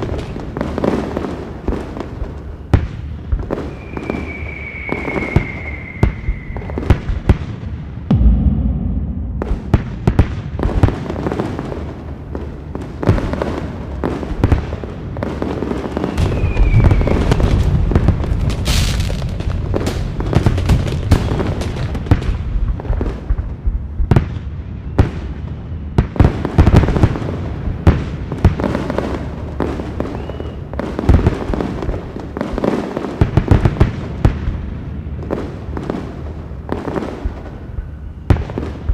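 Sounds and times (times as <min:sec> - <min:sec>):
fireworks bangs and crackles: 0:00.0 - 0:38.9
falling whistle: 0:03.6 - 0:06.9, 0:16.1 - 0:17.4, 0:30.1 - 0:30.6
high hiss: 0:03.7 - 0:06.9
low rumble: 0:08.1 - 0:10.7.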